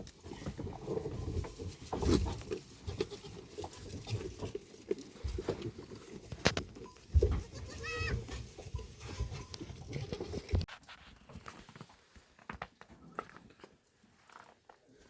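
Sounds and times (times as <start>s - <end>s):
goat bleating: 2.8s - 4.4s, 7.3s - 8.4s.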